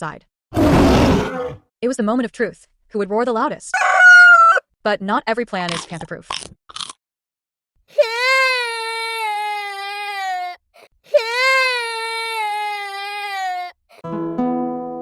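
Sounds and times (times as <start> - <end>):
long wailing cry: 3.8 - 4.6
acoustic guitar music: 14.0 - 15.0.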